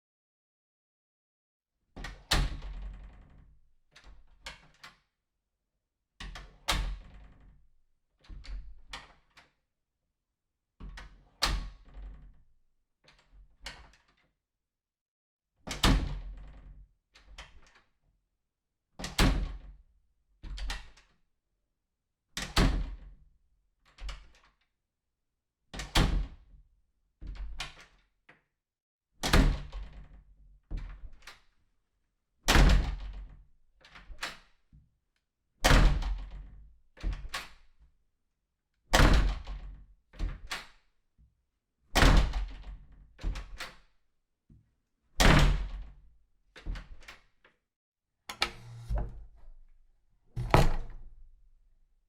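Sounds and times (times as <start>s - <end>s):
doors slamming shut: 50.4s - 51.2s.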